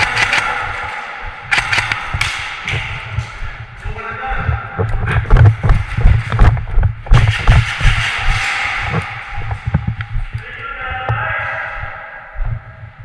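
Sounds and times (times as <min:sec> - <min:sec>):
sharp clicks and knocks: 0:00.0 - 0:00.9, 0:01.5 - 0:03.5, 0:04.4 - 0:10.5
low thumps: 0:00.0 - 0:13.0.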